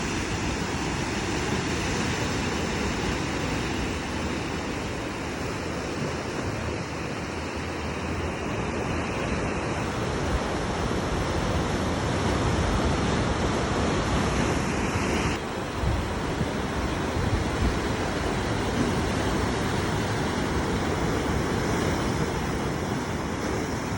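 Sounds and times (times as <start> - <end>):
surf washing onto beach: 0.0 - 23.9.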